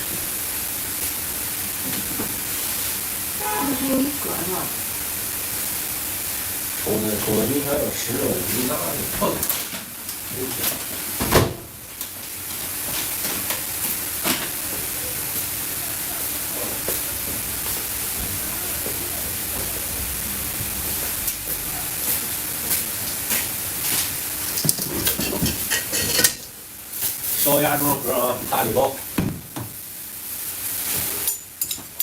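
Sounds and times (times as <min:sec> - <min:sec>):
vacuum packaging machine hissing: 0:04.8 - 0:20.4.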